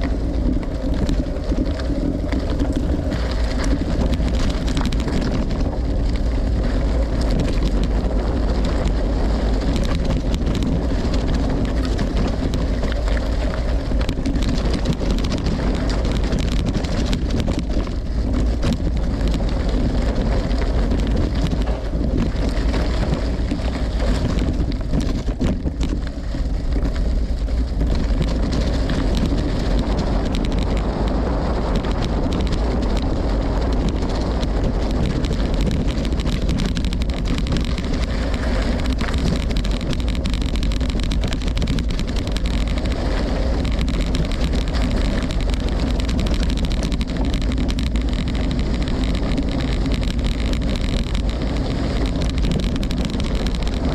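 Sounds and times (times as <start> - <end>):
tyres crackling on gravel: 0.0 - 53.9
wind rumble on microphone: 0.0 - 53.9.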